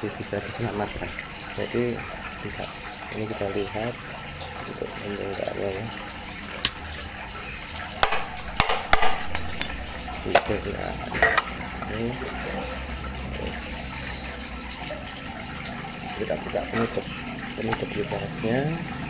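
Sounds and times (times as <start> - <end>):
plastic clicks and knocks: 8.0 - 10.6, 11.2 - 11.6.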